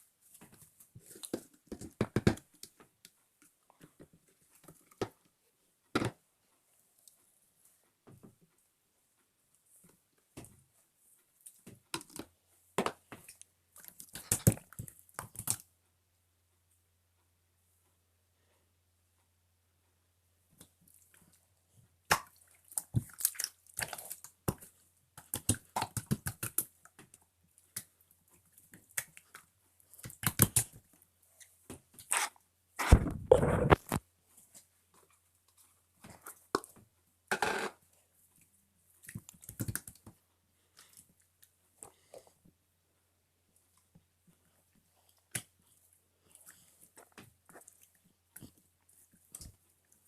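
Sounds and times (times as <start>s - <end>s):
clicks and crackles: 32.0s - 34.1s.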